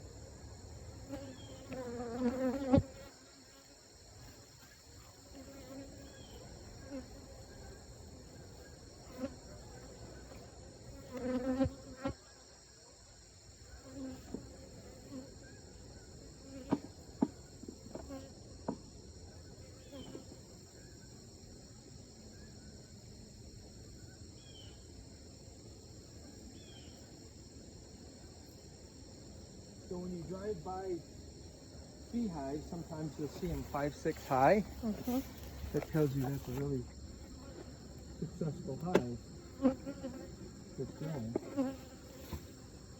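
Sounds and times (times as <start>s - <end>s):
honeybees buzzing: 0.0s - 12.2s, 13.7s - 18.7s, 29.0s - 42.9s
high-pitched insect chorus: 0.0s - 42.9s.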